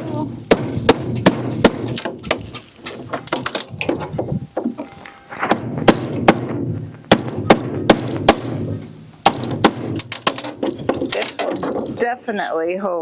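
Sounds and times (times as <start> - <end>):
hammer knocking on wooden crate: 0.5 - 2.4, 5.4 - 12.0.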